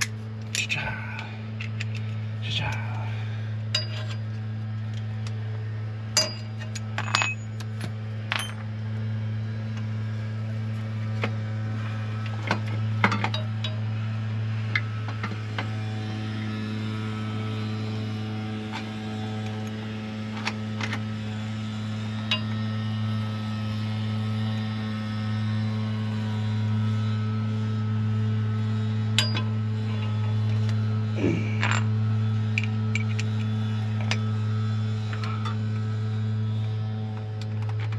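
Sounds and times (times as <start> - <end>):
steady low hum: 0.0 - 37.9
hand tools clinking on metal: 3.7 - 4.2, 6.2 - 7.6, 31.4 - 31.9.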